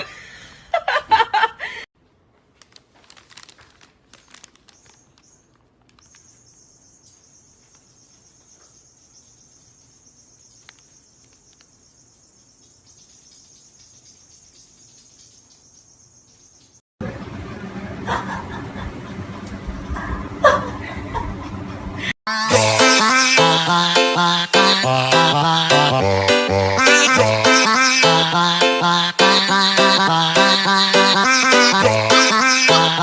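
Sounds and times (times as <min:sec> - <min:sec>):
faint clicks and rustles: 0:02.0 - 0:06.6.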